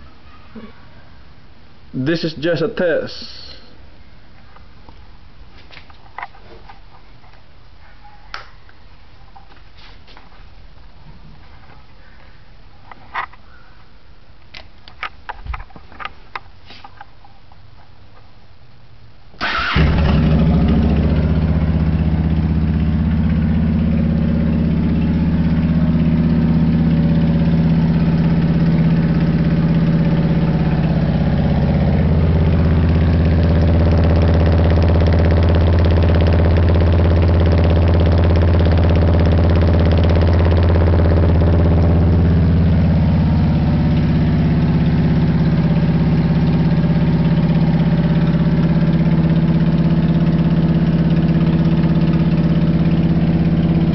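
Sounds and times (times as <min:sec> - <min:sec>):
motorcycle engine idling: 0:19.5 - 0:53.9.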